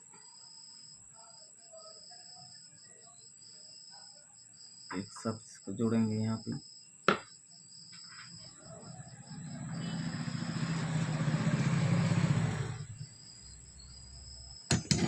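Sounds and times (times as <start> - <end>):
vehicle engine passing by: 8.6 - 13.2.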